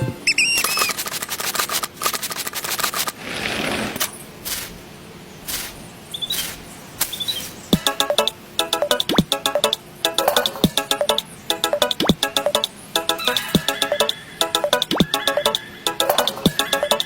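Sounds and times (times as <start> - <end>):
small hard objects clicking: 0.4 - 3.2
hiss-like scrape: 0.7 - 4.8, 5.4 - 7.7.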